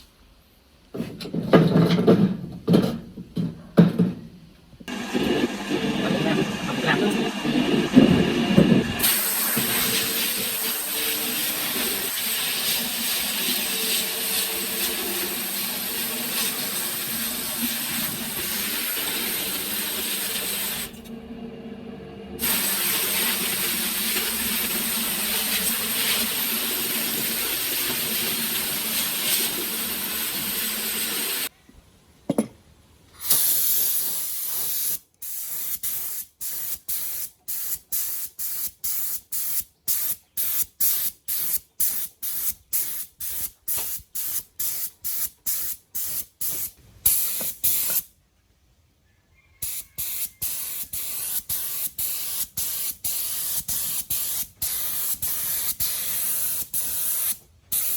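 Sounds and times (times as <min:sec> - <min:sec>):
spray hissing: 0:08.5 - 0:21.1, 0:22.4 - 0:31.5, 0:49.6 - 0:57.9.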